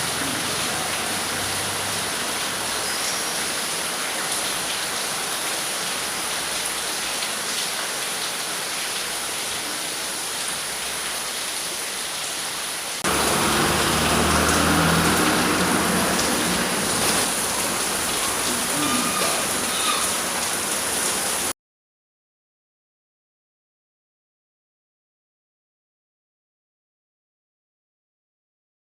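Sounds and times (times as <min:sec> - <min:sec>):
heavy rain pouring: 0:00.0 - 0:21.6.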